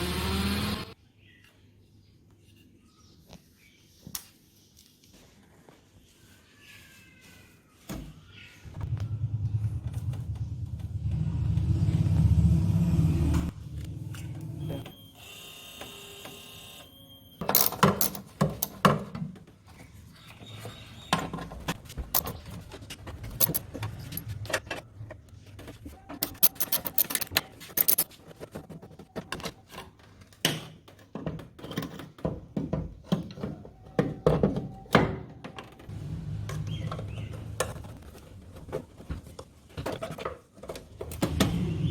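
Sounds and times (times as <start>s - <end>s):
metal tools clinking and rattling: 17.5s - 19.2s, 21.1s - 30.4s.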